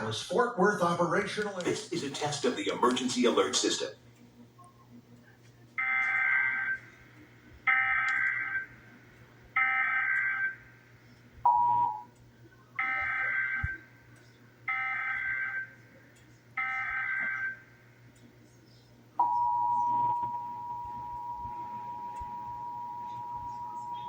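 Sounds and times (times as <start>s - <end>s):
low electronic beep: 11.5s - 12.1s, 19.2s - 24.0s.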